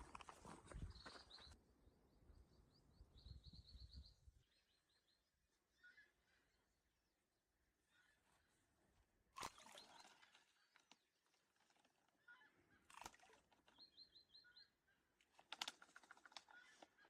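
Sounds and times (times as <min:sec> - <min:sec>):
faint bird calls: 0:02.3 - 0:06.8, 0:07.8 - 0:08.8, 0:11.7 - 0:17.0.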